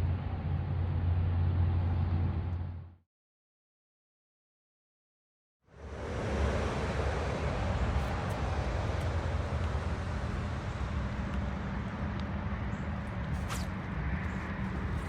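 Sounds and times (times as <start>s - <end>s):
wind and water rushing: 5.7s - 15.0s.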